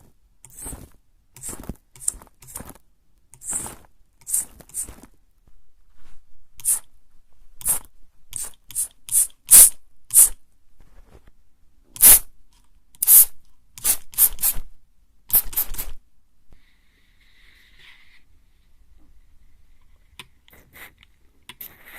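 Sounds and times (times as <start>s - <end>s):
spray bottle spritzing: 3.4s - 4.9s, 6.6s - 6.8s, 7.6s - 10.4s, 12.0s - 12.3s, 13.0s - 14.6s, 15.3s - 16.0s.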